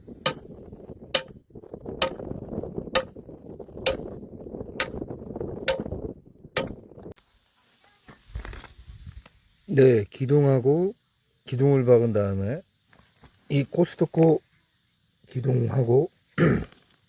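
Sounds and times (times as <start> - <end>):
hammer clanging on steel pipe: 1.2 - 1.4, 2.0 - 2.3, 3.9 - 4.2, 4.8 - 5.0, 5.7 - 5.9, 6.6 - 6.8.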